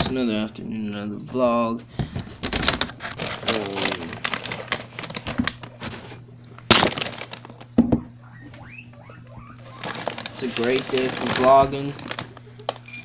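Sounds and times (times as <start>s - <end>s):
crackling handling noise: 1.3s - 7.8s, 9.5s - 13.0s.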